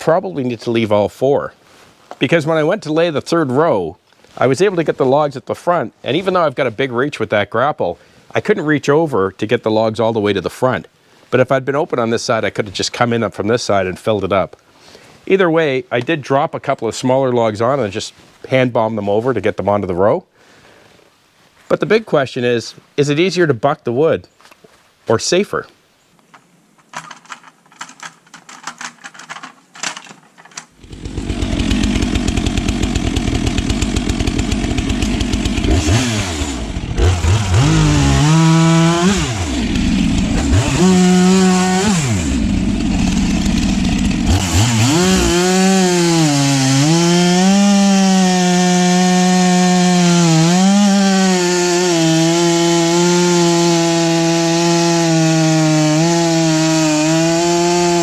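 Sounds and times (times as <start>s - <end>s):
clicks and knocks: 26.3s - 30.7s
chainsaw cutting logs: 27.0s - 58.0s.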